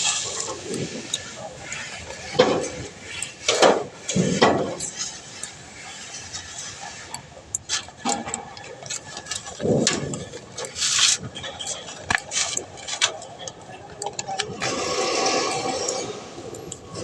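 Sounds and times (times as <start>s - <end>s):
hand tools knocking and scraping: 3.4s - 5.2s.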